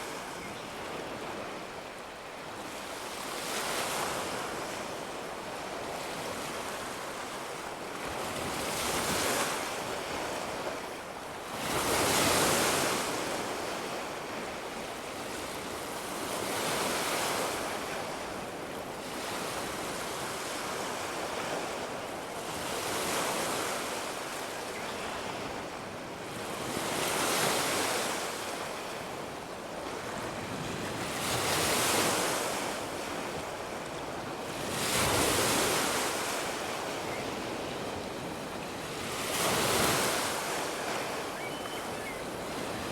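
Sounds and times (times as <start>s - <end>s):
sea waves breaking on beach: 11.5s - 42.9s.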